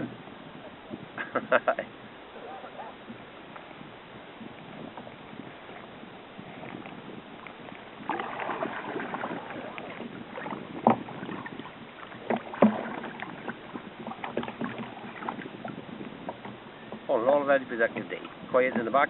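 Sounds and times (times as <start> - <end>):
water splashing around kayak hull: 0.0 - 19.0.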